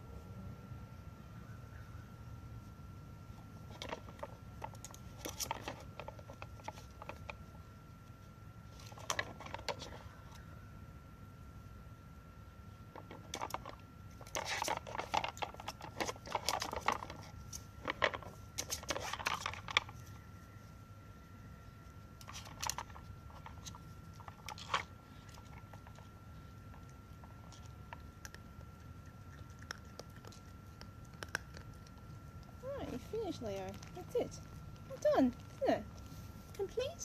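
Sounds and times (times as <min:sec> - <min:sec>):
faint steady high tone: 0:00.0 - 0:03.6, 0:19.9 - 0:22.2
dog crunching treats: 0:03.6 - 0:10.5, 0:12.9 - 0:20.5, 0:21.8 - 0:37.0.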